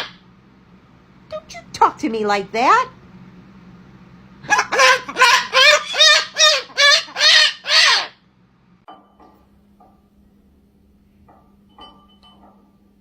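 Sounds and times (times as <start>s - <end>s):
parrot squawking: 0.0s - 0.2s, 4.4s - 8.2s.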